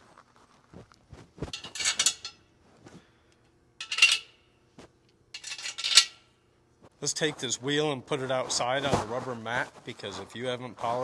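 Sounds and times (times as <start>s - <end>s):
metal parts clinking and rattling: 1.5s - 2.4s, 3.8s - 4.4s, 5.4s - 6.2s.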